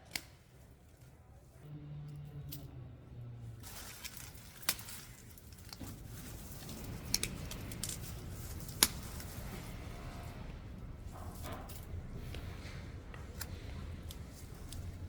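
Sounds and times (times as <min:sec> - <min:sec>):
sharp clicks and snips: 0:00.0 - 0:00.4, 0:06.7 - 0:09.3
rustling: 0:03.4 - 0:15.0.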